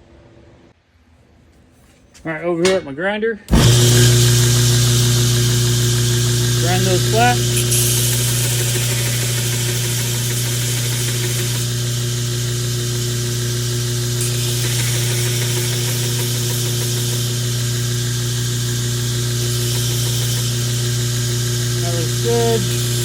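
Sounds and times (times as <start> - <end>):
electric grinder motor humming: 3.5 - 23.0
abrasive hissing against metal: 21.5 - 23.0.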